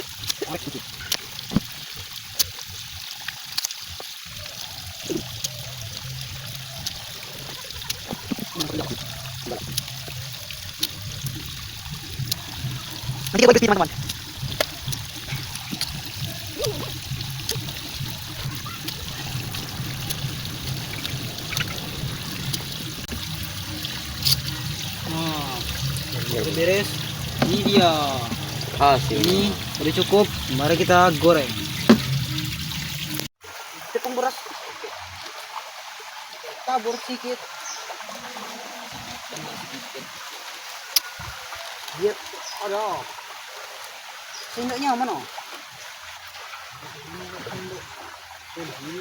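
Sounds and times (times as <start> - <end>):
river water flowing: 0.0 - 49.0.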